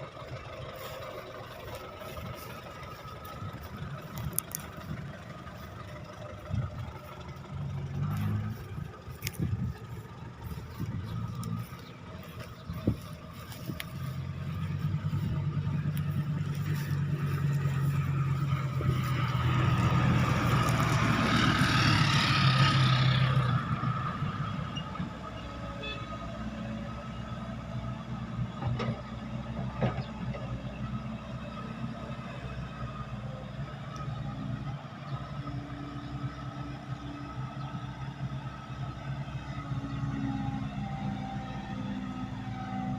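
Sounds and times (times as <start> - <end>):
heavy diesel engine running: 0.0 - 42.9.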